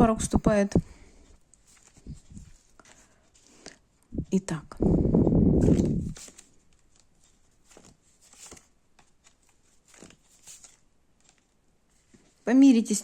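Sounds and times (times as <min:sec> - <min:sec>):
cards shuffling: 0:01.6 - 0:03.7, 0:05.6 - 0:12.4
cards swishing and tapping: 0:01.6 - 0:03.7, 0:05.6 - 0:12.4.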